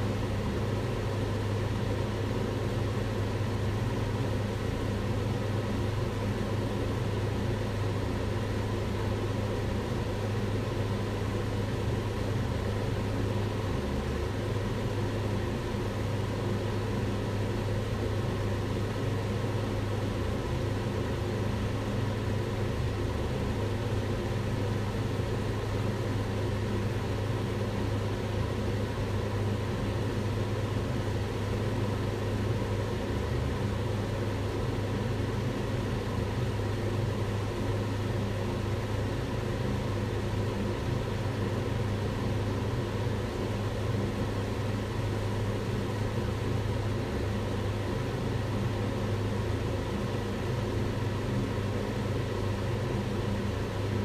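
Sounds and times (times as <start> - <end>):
range hood fan running: 0.0 - 54.0.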